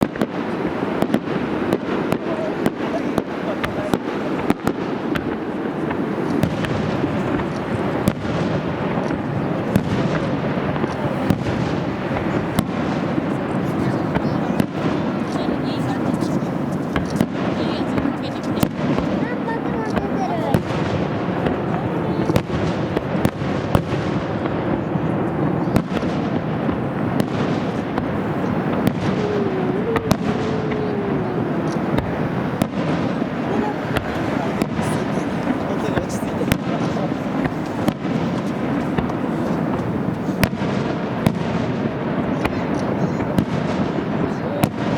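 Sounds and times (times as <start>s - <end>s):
fireworks bangs: 0.0s - 44.9s
fireworks rumble and crackle: 0.0s - 44.9s.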